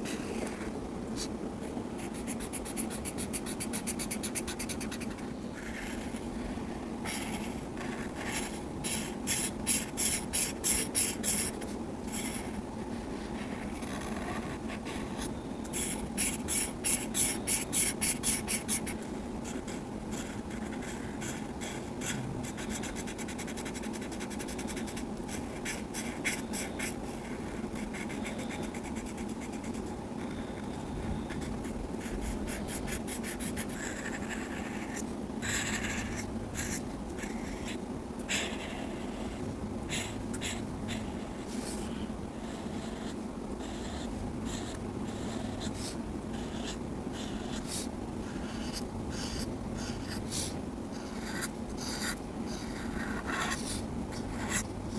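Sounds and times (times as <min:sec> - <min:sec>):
pencil scratching on paper: 0:13.2 - 0:54.7.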